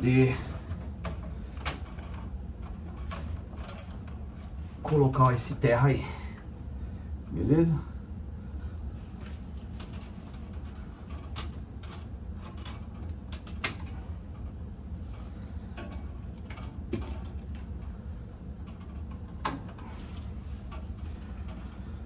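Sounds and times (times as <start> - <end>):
steady low hum: 0.0 - 22.0
tools and wire clicking: 0.4 - 4.2, 9.8 - 14.0, 15.8 - 17.9, 18.6 - 21.7.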